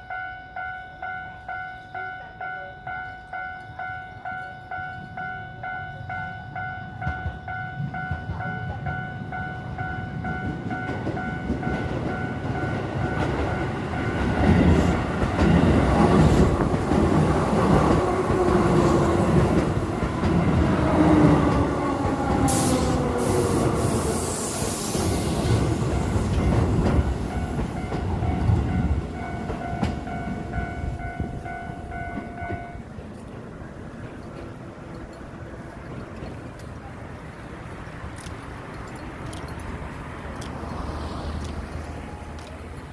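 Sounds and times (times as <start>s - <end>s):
level crossing bell ringing: 0.0s - 15.8s, 25.8s - 32.8s
train wheels rumbling: 1.9s - 42.9s.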